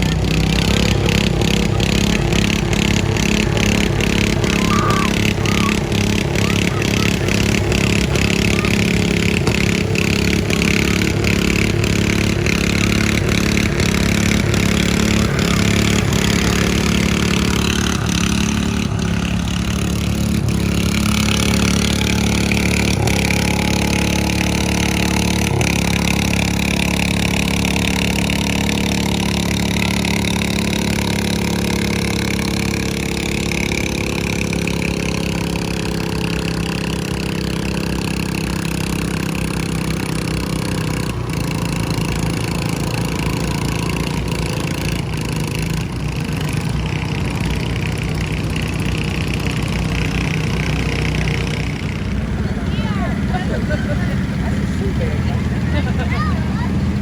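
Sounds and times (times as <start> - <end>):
lawn mower engine running: 0.0 - 57.0.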